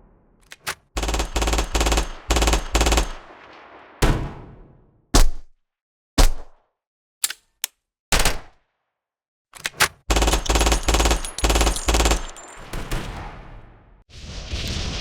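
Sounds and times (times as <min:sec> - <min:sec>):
gunshots: 0:00.0 - 0:05.5, 0:09.7 - 0:14.0
gun clicks: 0:00.4 - 0:00.9, 0:07.2 - 0:08.6, 0:09.6 - 0:12.6
automatic gunfire burst: 0:01.0 - 0:03.5, 0:10.1 - 0:13.2.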